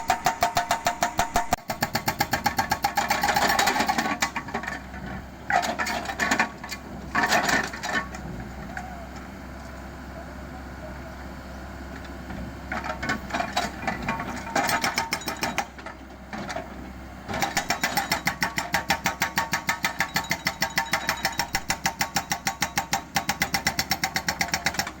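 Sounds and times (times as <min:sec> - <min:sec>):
hydraulic breaker hammering concrete: 0:00.0 - 0:04.3, 0:14.2 - 0:15.8, 0:17.4 - 0:25.0
excavator engine running: 0:00.0 - 0:25.0.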